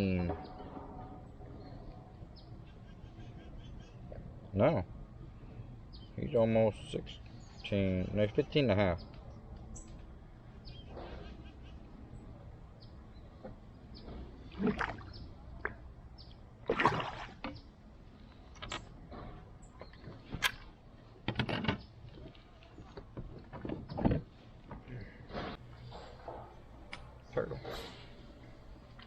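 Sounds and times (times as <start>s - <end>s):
water sloshing: 13.5s - 21.0s.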